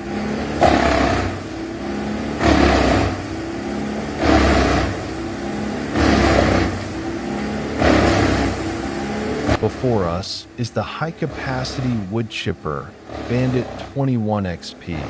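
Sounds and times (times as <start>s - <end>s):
wood chipper engine running: 0.0s - 15.0s
wood grinding in chipper drum: 0.0s - 15.0s.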